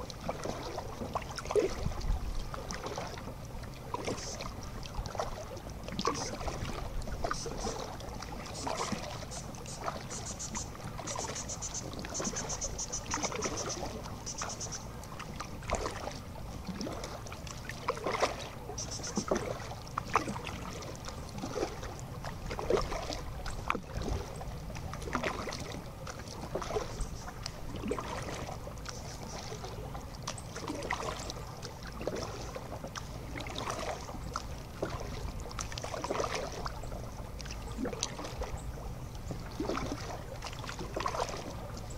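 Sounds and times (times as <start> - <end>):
paddle splashing in water: 0.0 - 41.9
wind rumble on microphone: 1.7 - 2.6.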